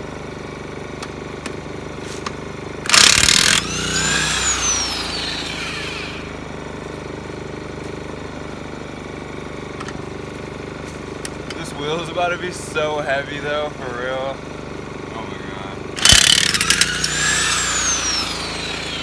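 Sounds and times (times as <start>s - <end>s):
generator humming: 2.8s - 6.6s, 11.6s - 19.0s
impact wrench motor whining: 2.8s - 6.6s, 16.0s - 19.0s
impact wrench hammering: 2.9s - 6.3s, 16.0s - 19.0s.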